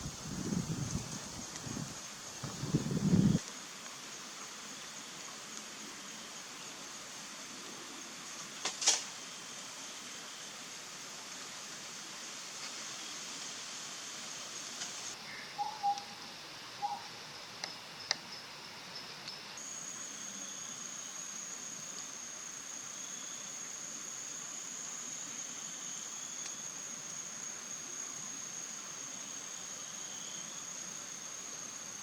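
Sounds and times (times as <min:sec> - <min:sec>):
high-pitched insect trill: 0:00.0 - 0:05.4, 0:12.9 - 0:32.0
owl whistled notes: 0:15.3 - 0:16.2.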